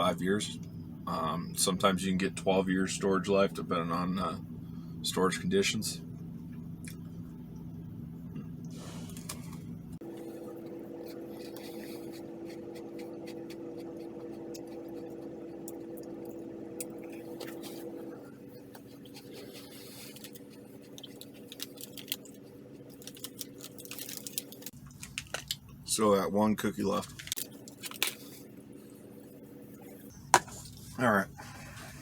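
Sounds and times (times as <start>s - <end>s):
steady low hum: 0.0s - 32.0s
cookie crunching: 10.0s - 25.7s
packaging crinkling: 18.5s - 25.6s, 27.0s - 28.5s.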